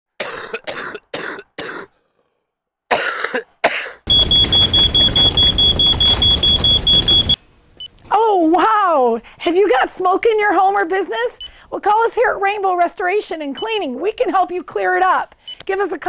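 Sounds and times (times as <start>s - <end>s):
person coughing: 0.2s - 2.0s, 2.9s - 4.1s
smoke alarm beeping rapidly: 4.1s - 7.4s.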